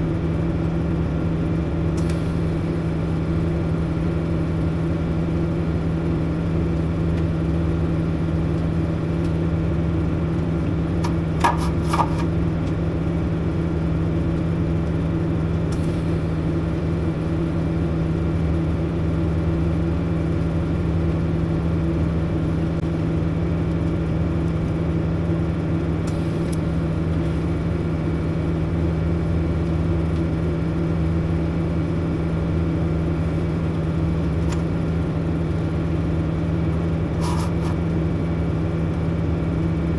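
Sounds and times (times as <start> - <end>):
welder humming and hissing: 15.8 - 22.8, 26.1 - 36.3, 37.1 - 37.8.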